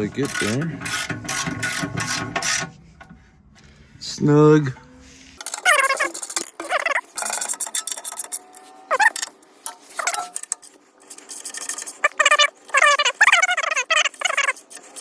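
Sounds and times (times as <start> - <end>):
short squeaks: 4.9 - 15.0.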